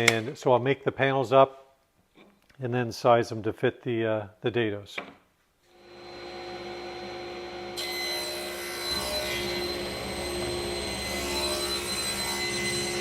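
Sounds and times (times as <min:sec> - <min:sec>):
power saw cutting wood: 0:05.8 - 0:13.0.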